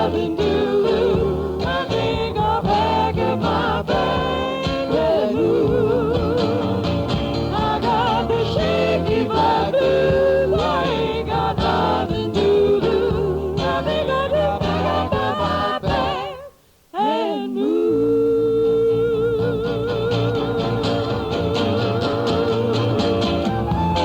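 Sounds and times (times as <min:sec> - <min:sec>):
steady musical accompaniment: 0:20.4 - 0:24.0.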